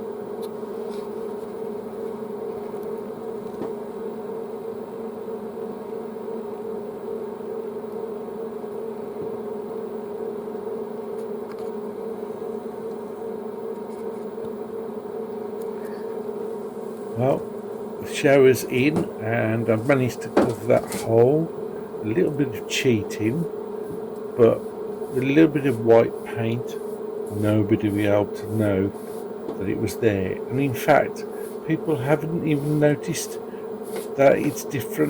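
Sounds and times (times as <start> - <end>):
shower pump humming: 17.1 - 35.0.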